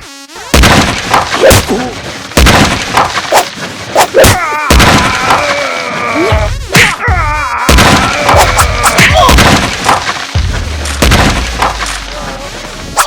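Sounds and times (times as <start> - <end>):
impact hits and crashes: 0.5 - 5.6, 7.7 - 12.2.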